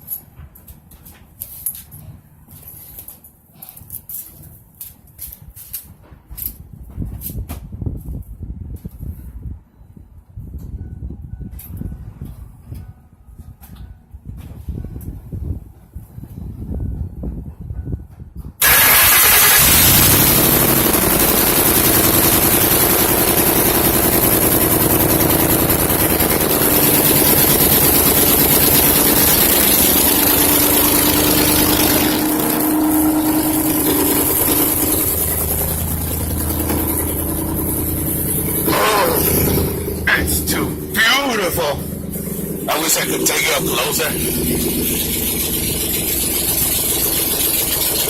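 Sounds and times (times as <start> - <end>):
loud car engine starting: 18.6 - 48.0.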